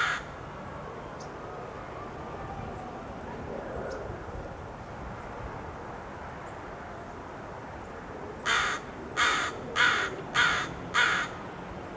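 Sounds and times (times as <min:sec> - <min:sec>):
crow cawing: 0:00.0 - 0:00.3, 0:08.4 - 0:11.4
faint background noise: 0:00.0 - 0:11.9.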